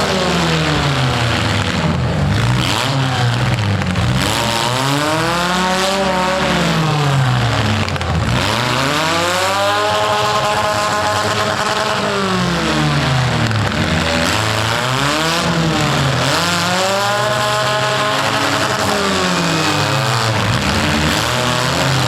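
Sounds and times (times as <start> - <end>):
car engines revving hard: 0.0 - 22.0
low engine drone: 0.0 - 22.0.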